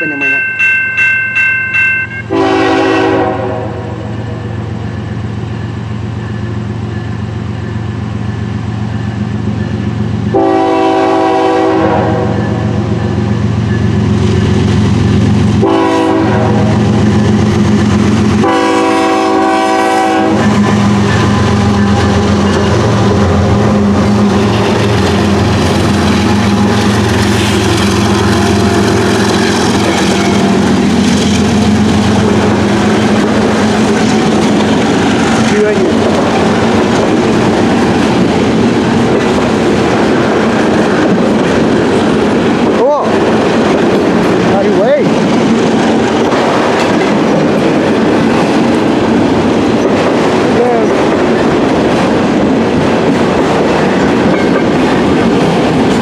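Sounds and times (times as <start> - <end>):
locomotive rumble: 0.0 - 56.0
rolling train cars clattering: 0.0 - 56.0
train horn blasts: 2.3 - 4.4, 10.3 - 12.7, 15.6 - 16.8, 18.4 - 24.4.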